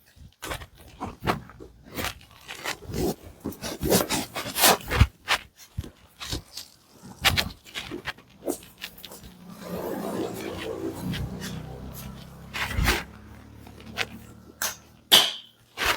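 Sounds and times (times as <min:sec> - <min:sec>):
hands rubbing and scraping: 0:00.4 - 0:15.9
joints cracking and popping: 0:10.6 - 0:15.9.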